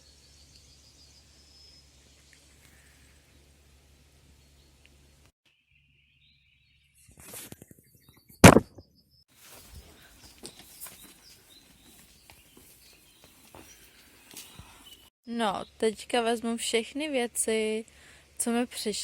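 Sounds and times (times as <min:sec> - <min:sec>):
sharp knock: 0:08.4 - 0:08.8
rustling: 0:09.3 - 0:15.1.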